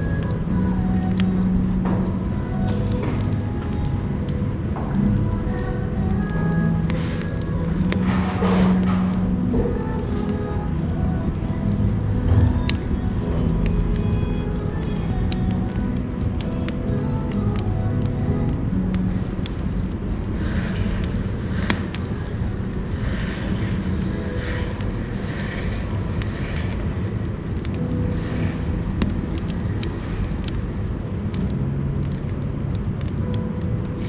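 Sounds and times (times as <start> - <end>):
firewood burning in stove: 0.0 - 34.0.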